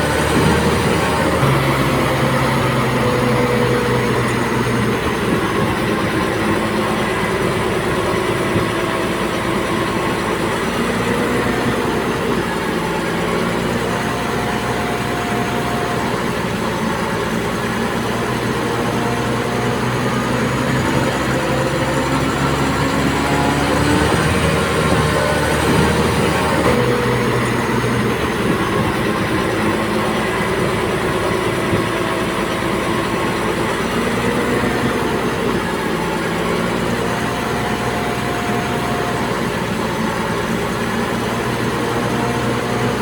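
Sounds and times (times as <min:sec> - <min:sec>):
bulldozer diesel engine running: 0:00.0 - 0:43.0.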